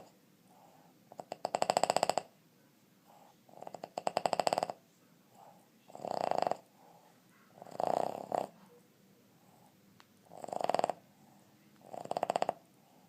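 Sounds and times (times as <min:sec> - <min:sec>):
dog snoring with rattling stutter: 0:01.1 - 0:02.3, 0:03.5 - 0:04.8, 0:05.9 - 0:06.7, 0:07.6 - 0:08.5, 0:10.3 - 0:11.0, 0:11.8 - 0:12.6
dog breathing softly: 0:06.5 - 0:08.8.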